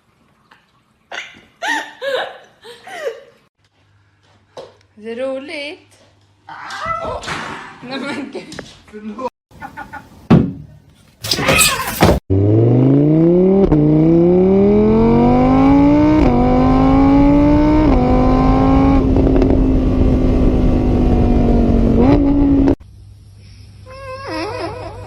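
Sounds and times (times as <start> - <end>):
car engine accelerating: 12.3 - 22.8.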